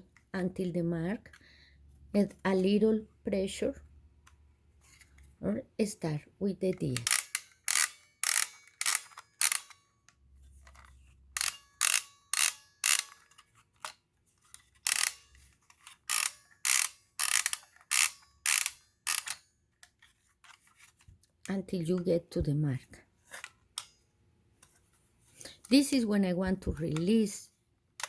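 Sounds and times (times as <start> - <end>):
sewing attachment clicking: 6.9 - 9.8, 10.7 - 14.0, 14.8 - 19.4.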